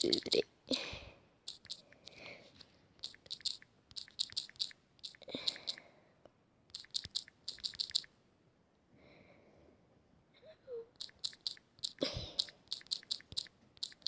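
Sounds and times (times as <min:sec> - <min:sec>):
soft breath: 0:00.7 - 0:02.9, 0:08.9 - 0:10.9
quick sharp clicks: 0:01.4 - 0:02.2, 0:03.0 - 0:05.9, 0:06.7 - 0:08.1, 0:11.0 - 0:14.0.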